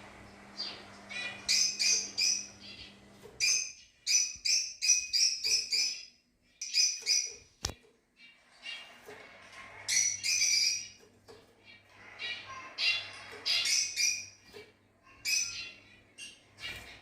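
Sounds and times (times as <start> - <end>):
lovebirds chirping: 0.4 - 9.0.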